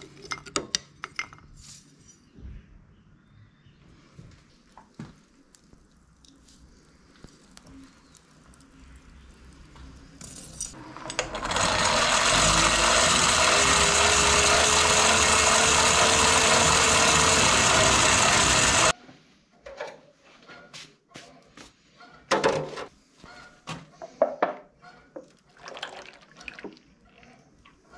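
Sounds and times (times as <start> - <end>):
power tool grinding: 10.7 - 18.9.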